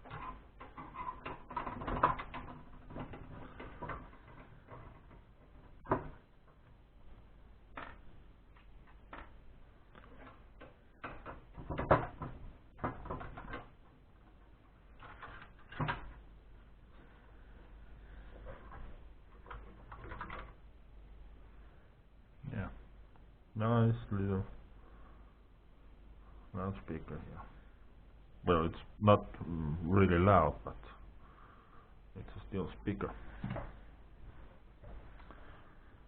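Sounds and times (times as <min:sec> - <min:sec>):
plastic and metal parts rattling: 0:00.0 - 0:06.6, 0:07.7 - 0:16.3, 0:18.4 - 0:20.6.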